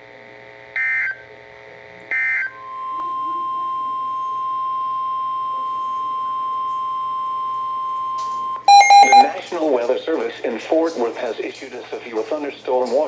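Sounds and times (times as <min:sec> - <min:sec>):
steady alarm tone: 0:02.1 - 0:09.4
digital data tone bursts: 0:08.7 - 0:09.4.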